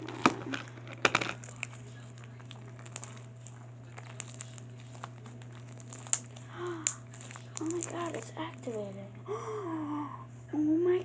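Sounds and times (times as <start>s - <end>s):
steady low hum: 0.0s - 11.0s
slime sticky clicks and pops: 3.9s - 8.8s.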